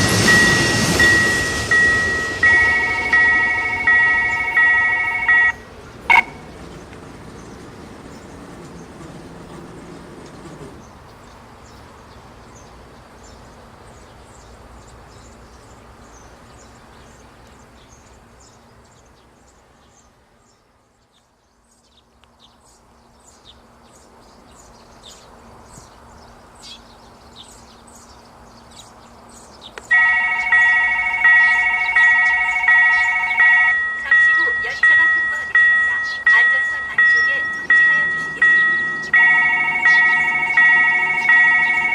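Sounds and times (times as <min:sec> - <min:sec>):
level-crossing warning bell ringing: 0:00.0 - 0:06.5, 0:29.9 - 0:41.9
train rumble: 0:00.0 - 0:18.3, 0:23.7 - 0:41.9.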